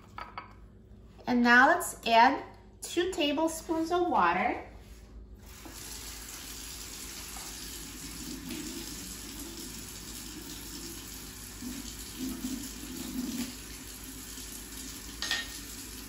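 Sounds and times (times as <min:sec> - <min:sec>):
water running from tap: 0:05.4 - 0:16.0.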